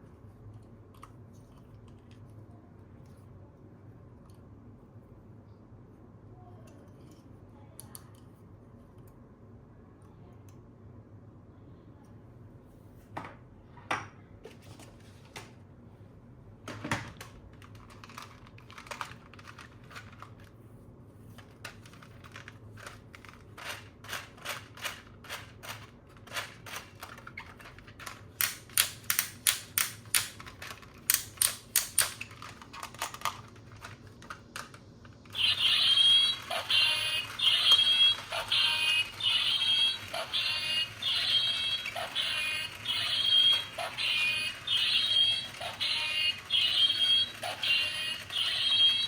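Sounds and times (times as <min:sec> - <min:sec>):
plastic toy parts clicking: 0:07.8 - 0:08.2, 0:17.2 - 0:20.4, 0:21.4 - 0:49.0
electronic toy warbling tone: 0:35.3 - 0:49.0.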